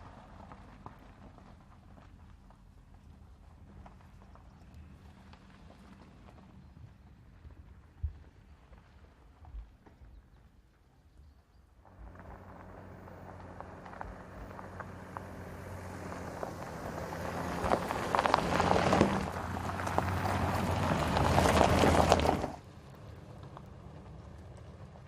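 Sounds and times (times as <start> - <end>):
tyres crunching over loose ground: 0.0 - 10.8, 11.8 - 25.0
car engine under load: 11.8 - 25.0.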